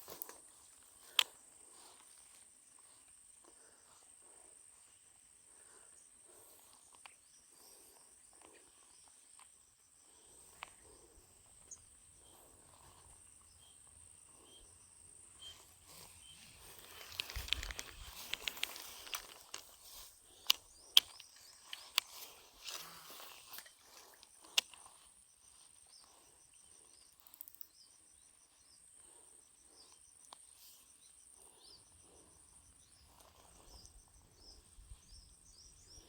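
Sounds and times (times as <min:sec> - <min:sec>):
outdoor background noise: 0:00.0 - 0:36.0
rustling: 0:15.6 - 0:24.1
sharp clicks: 0:16.3 - 0:22.9, 0:23.5 - 0:24.9.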